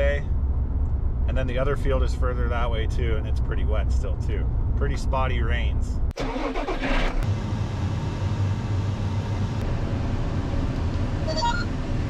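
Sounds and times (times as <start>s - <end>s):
vehicle engine rumbling: 0.0s - 12.0s
electronic beeps: 11.3s - 11.7s.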